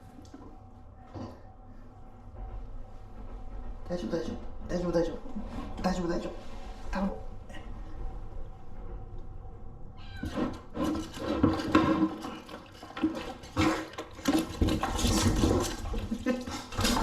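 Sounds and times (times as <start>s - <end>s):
cats yowling: 10.0s - 10.6s.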